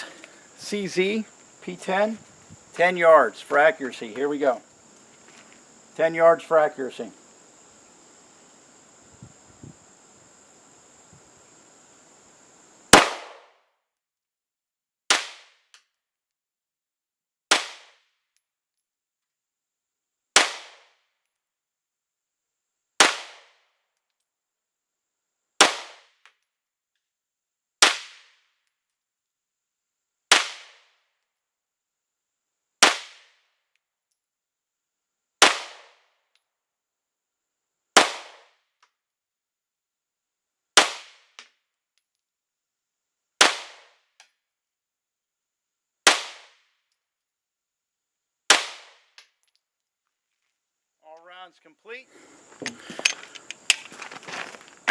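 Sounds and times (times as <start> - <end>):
pistol shots: 13.0 - 13.4.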